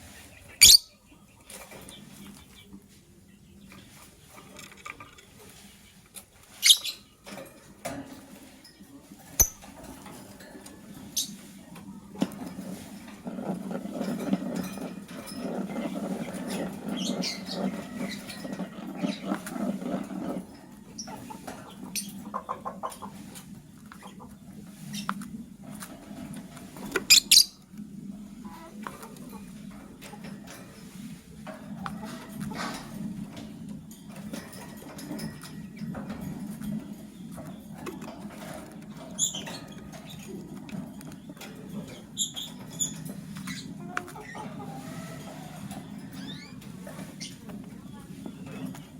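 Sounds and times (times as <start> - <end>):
lovebirds chirping and chattering: 0.0 - 48.9
lovebird chirps: 0.6 - 1.0
light clicking and scratching: 3.6 - 48.9.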